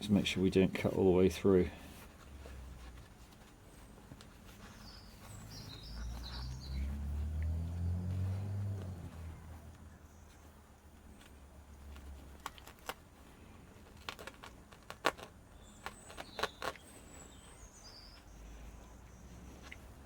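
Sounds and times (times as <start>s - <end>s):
faint bird chirps: 3.7s - 7.2s, 15.6s - 20.0s.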